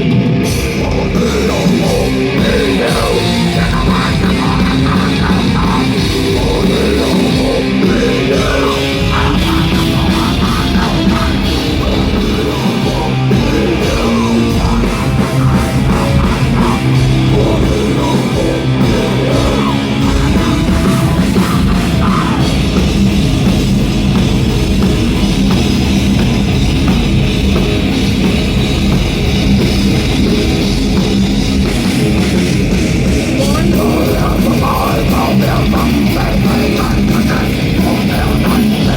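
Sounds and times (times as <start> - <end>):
drums: 0.0 - 38.9
live rock band playing: 0.0 - 38.9.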